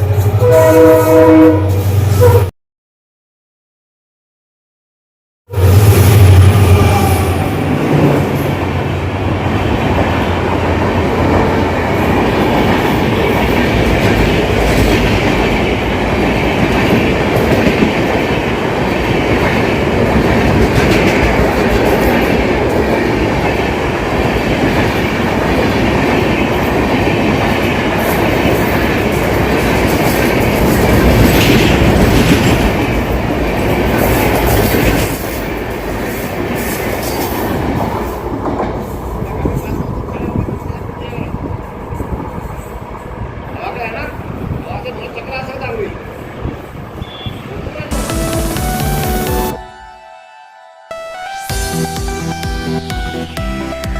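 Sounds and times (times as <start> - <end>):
train wheels clickety-clack: 11.2 - 44.0.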